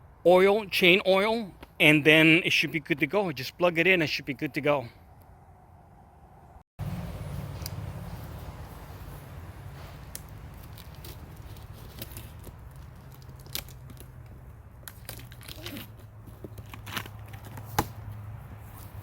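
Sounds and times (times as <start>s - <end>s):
packaging rustling and crinkling: 9.9s - 17.9s
cardboard tearing: 10.6s - 14.2s, 14.8s - 18.0s.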